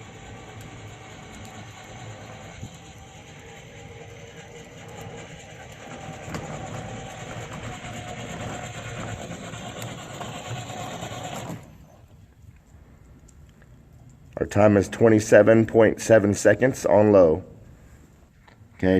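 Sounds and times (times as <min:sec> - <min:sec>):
electric drive motors whirring: 0:00.0 - 0:12.1
wheels rolling: 0:00.0 - 0:16.9.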